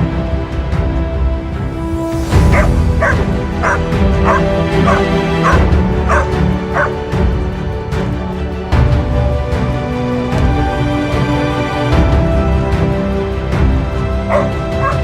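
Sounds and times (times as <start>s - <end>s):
background music: 0.0s - 15.0s
dog yipping and whimpering: 2.5s - 6.9s, 14.3s - 15.0s.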